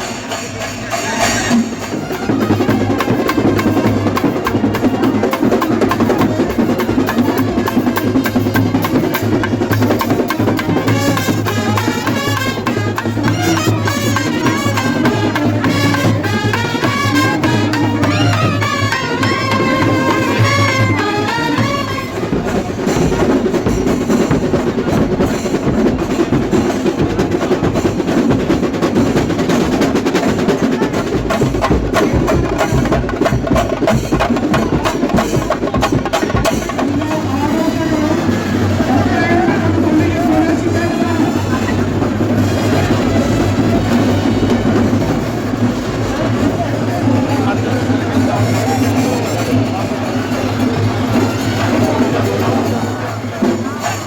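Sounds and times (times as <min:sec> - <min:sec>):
drum ensemble beating: 0:00.0 - 0:54.0.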